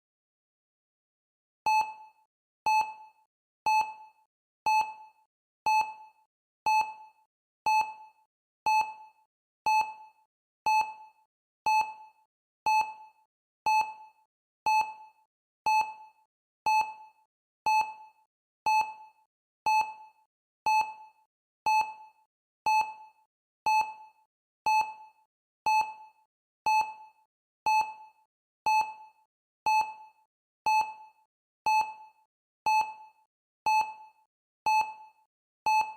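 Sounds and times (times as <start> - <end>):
electronic timer beeps: 1.7 - 3.1, 34.7 - 35.9.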